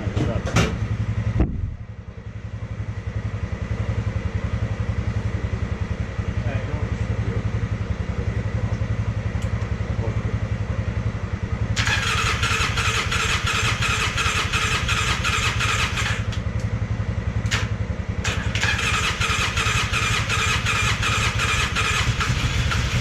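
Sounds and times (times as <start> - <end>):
engine cranking without starting: 11.8 - 16.4, 17.5 - 23.0.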